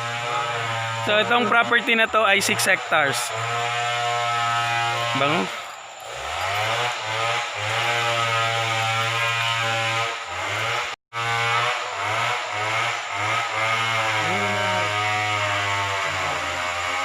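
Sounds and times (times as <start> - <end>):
small petrol engine revving: 0.0 - 17.0.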